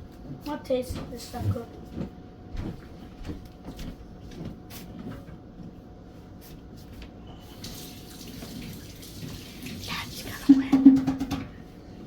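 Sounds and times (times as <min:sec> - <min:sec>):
kitchen things clicking and knocking: 0:10.5 - 0:11.6.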